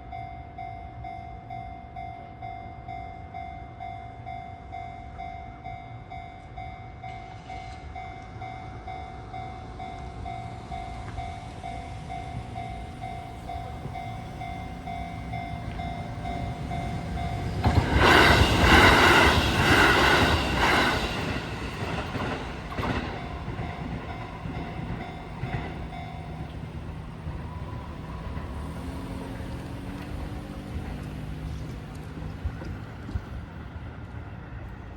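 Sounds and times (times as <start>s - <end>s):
level-crossing warning bell: 0.0s - 31.6s
electric train passing: 0.0s - 34.9s
train wheels clattering: 9.8s - 34.2s.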